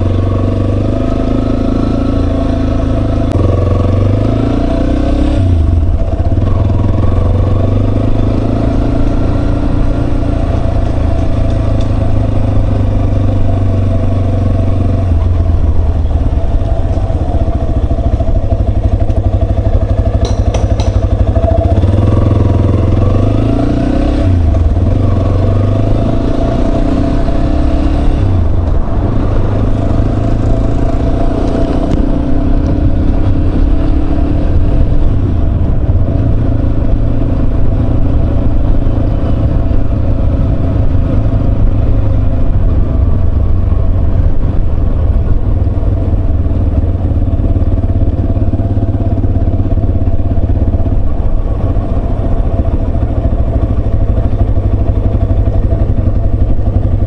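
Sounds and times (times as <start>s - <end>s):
motorcycle engine running: 0.0s - 57.0s
wind rush: 27.3s - 47.0s.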